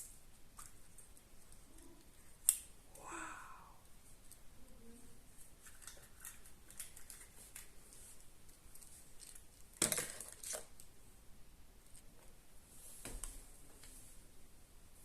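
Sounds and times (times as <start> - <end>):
plastic pieces clicking and rustling: 5.6 - 7.7, 8.7 - 10.8
plastic pieces clattering: 8.8 - 10.7.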